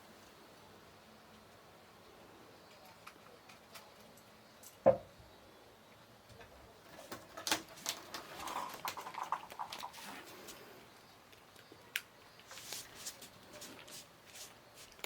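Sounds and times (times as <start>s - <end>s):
kitten paws pattering and clicking: 11.3s - 15.0s.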